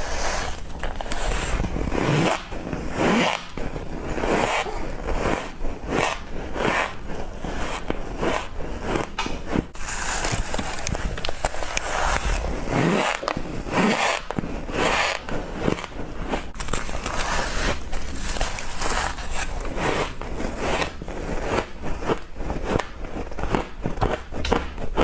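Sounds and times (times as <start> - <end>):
person chewing crunchy frost: 0.0 - 25.0.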